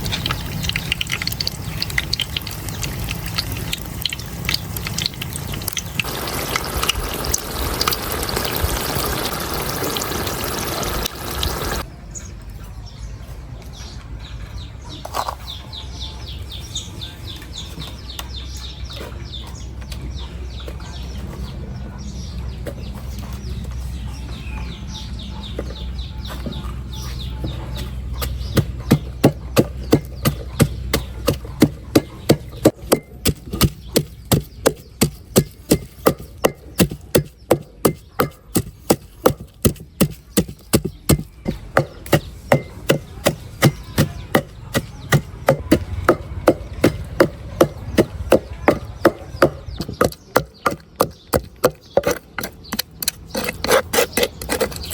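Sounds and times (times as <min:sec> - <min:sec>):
water running and splashing: 0:00.0 - 0:11.8
knife chopping on wooden board: 0:28.2 - 0:54.9.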